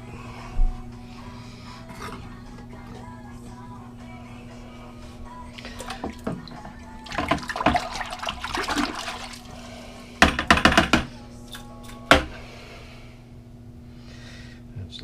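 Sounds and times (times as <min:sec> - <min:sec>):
low machinery hum: 0:00.0 - 0:15.0
water splashing and pouring: 0:05.6 - 0:09.6.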